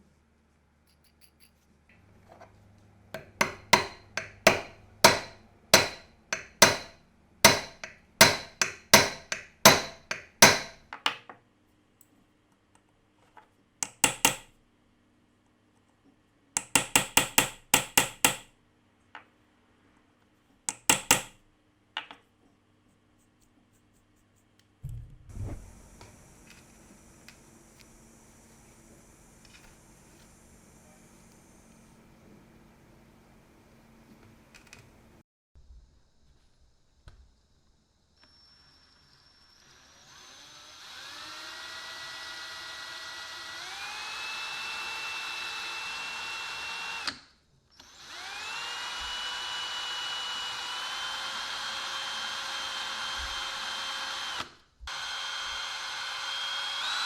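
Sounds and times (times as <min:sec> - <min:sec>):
hammer tapping hard workpiece: 0:03.2 - 0:11.3, 0:13.8 - 0:14.5, 0:16.6 - 0:18.5, 0:20.7 - 0:21.4.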